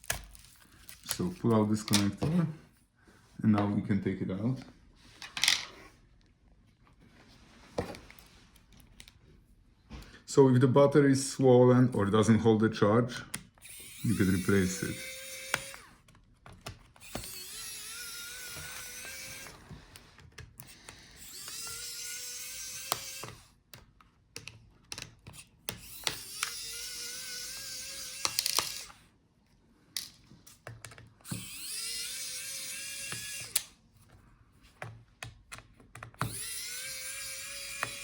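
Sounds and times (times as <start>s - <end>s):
electric screwdriver whirring: 13.4s - 23.6s, 25.7s - 29.0s, 31.2s - 33.8s, 36.2s - 38.0s
screws clicking and tapping: 20.2s - 28.9s, 34.8s - 38.0s.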